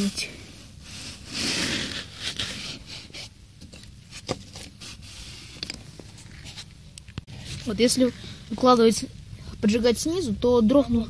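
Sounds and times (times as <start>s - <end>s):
scraping rustle: 0.8s - 7.8s.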